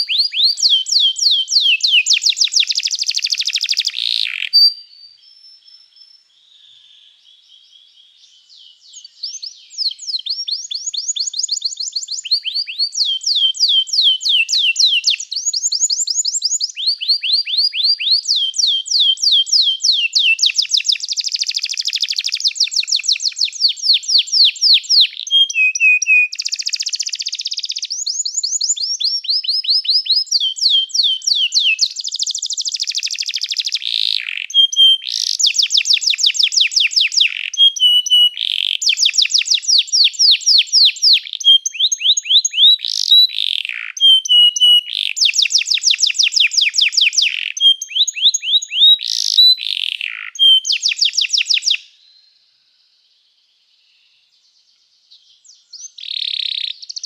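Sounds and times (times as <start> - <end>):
canary singing trills: 0.0 - 6.2, 7.4 - 52.0, 55.3 - 57.0.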